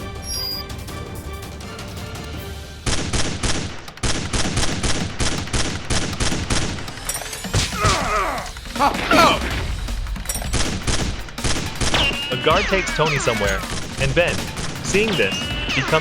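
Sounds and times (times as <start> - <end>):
background music: 0.0 - 16.0
rapid automatic gunfire: 2.8 - 7.4, 10.2 - 16.0
person crying out: 7.8 - 9.5.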